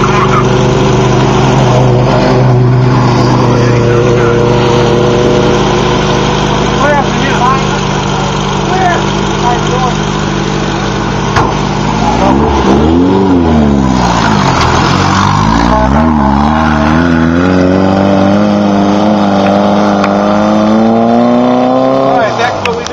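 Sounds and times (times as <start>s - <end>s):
race car engine revving: 0.0s - 22.9s.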